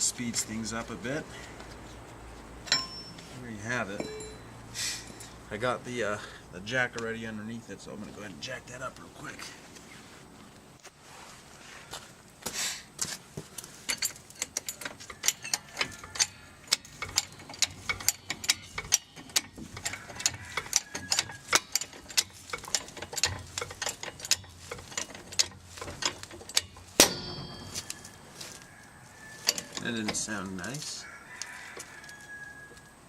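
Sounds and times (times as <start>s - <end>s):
hydraulic jack clicking and knocking: 13.9s - 28.0s.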